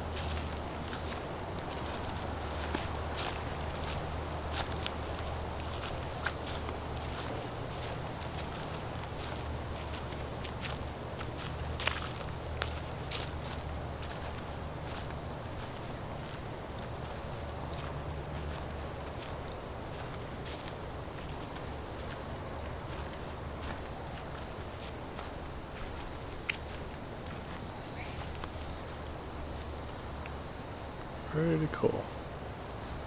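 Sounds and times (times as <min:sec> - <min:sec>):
crickets trilling: 0:00.0 - 0:33.0.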